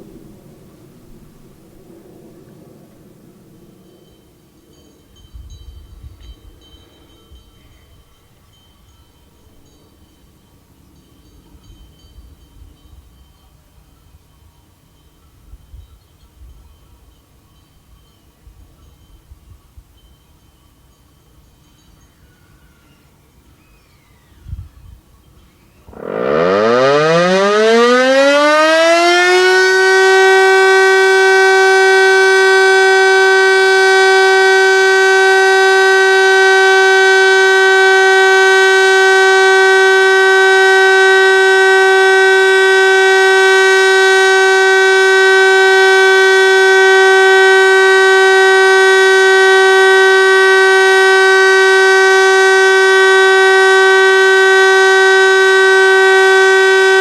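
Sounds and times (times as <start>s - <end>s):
siren steady tone: 25.7s - 57.0s.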